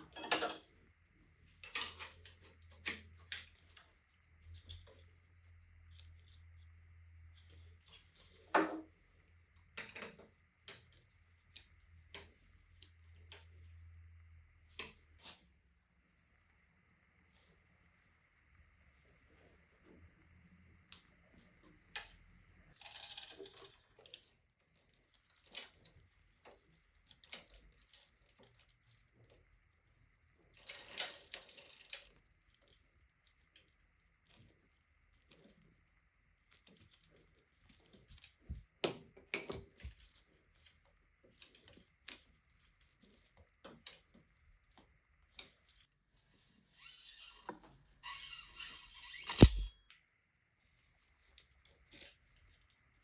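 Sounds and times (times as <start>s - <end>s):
metal bike parts clinking: 48.6s - 49.7s.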